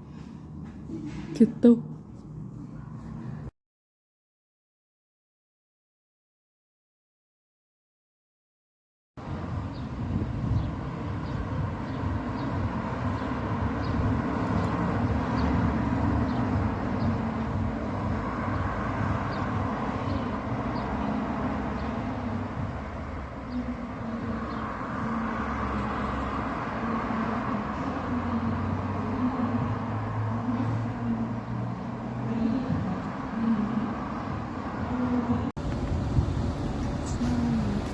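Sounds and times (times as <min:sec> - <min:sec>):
engine running low rumble: 0:09.2 - 0:37.9.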